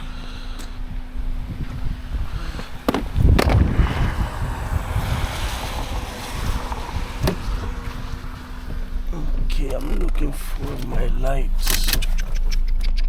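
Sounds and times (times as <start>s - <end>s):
wind buffeting microphone: 0.7s - 12.7s
sharp knocks: 2.9s - 3.6s.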